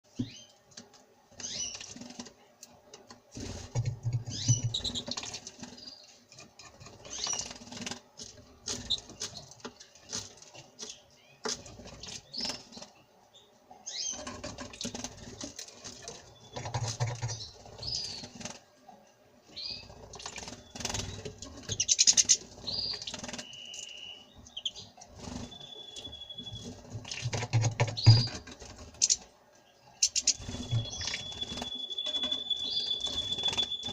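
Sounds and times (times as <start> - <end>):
bird chirps: 19.5 - 29.2, 29.9 - 33.9
thin whistled bird notes: 22.7 - 24.8, 30.0 - 33.9.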